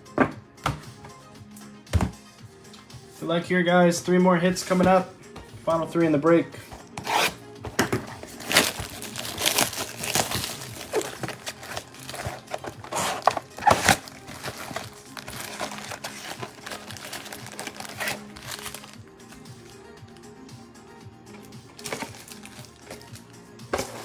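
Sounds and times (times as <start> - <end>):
music playing: 0.0 - 24.0
foil wrappers crinkling and tearing: 7.0 - 19.9, 21.4 - 24.0.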